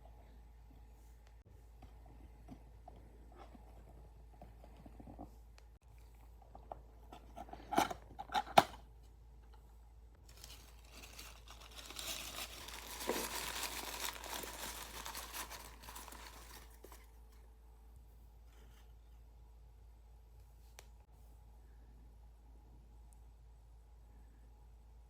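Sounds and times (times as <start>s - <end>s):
packaging tearing and crinkling: 10.2s - 17.2s.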